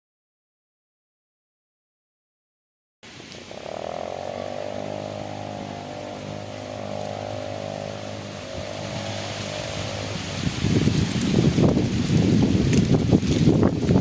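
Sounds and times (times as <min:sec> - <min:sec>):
small engine buzzing: 0:03.3 - 0:12.2
wind buffeting microphone: 0:03.4 - 0:14.0.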